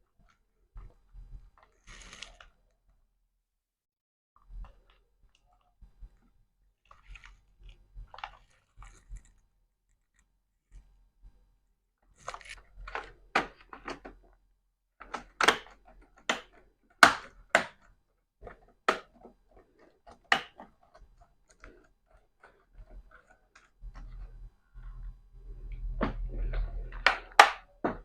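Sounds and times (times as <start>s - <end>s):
laptop keyboard plastic clicks: 15.0s - 19.4s.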